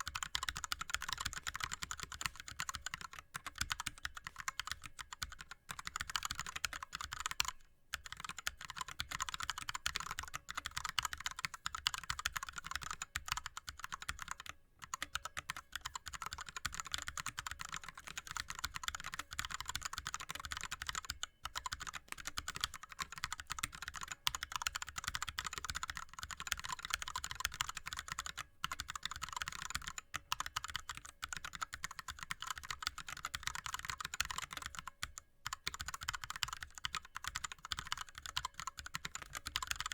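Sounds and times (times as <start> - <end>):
keyboard typing clacks: 0.0 - 39.9.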